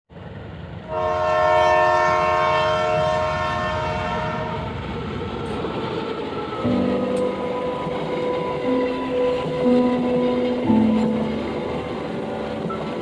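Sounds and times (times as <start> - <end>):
low train rumble: 0.1 - 13.0
train horn chord: 0.9 - 4.7, 6.6 - 13.0.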